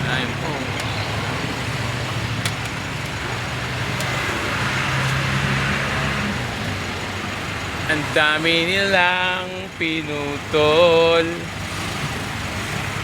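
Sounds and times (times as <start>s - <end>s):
roadside traffic: 0.0s - 13.0s
vehicle engine humming: 0.0s - 13.0s.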